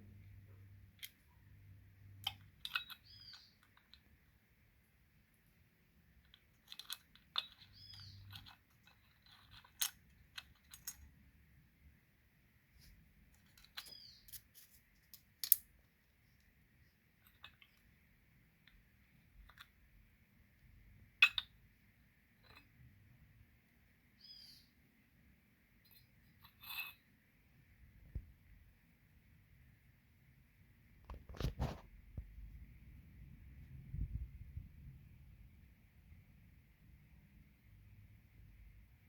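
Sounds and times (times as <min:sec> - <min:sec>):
tools and metal parts clicking: 0:02.2 - 0:04.0, 0:06.3 - 0:11.1.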